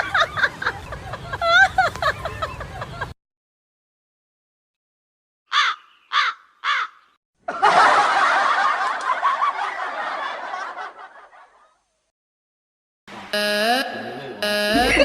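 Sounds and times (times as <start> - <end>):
recorded crowd laughing: 0.0 - 3.2, 7.4 - 11.8, 14.7 - 15.0.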